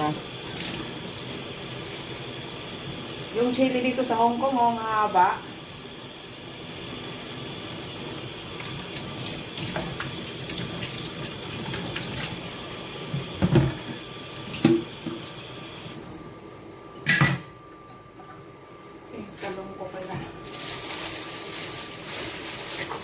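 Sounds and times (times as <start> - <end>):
tap running into sink: 8.6 - 12.4, 13.1 - 15.3.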